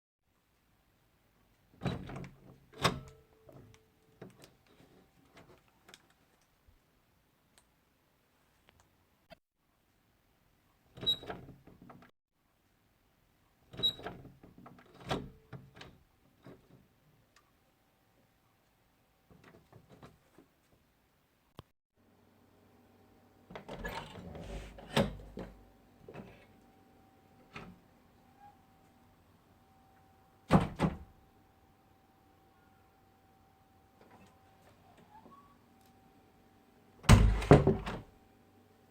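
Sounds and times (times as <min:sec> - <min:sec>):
door squeaking: 0:11.0 - 0:11.4, 0:23.6 - 0:25.2
door thumping: 0:37.0 - 0:38.1.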